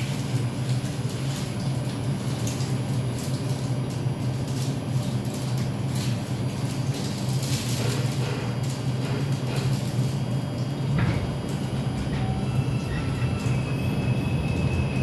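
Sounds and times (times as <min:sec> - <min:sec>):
subway car hum and rumble: 0:00.0 - 0:15.0
rattles and clicks from car body: 0:07.0 - 0:10.2, 0:10.9 - 0:11.7.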